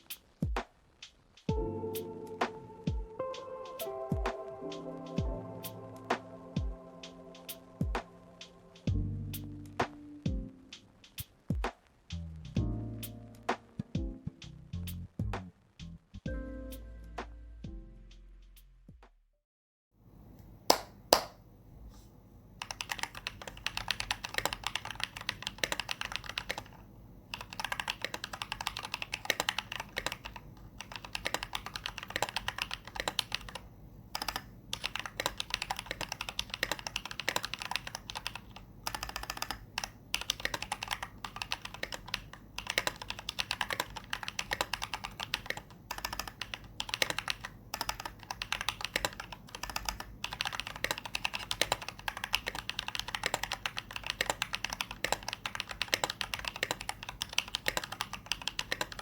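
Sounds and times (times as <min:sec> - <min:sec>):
typing on mechanical keyboard: 0:22.6 - 0:59.0.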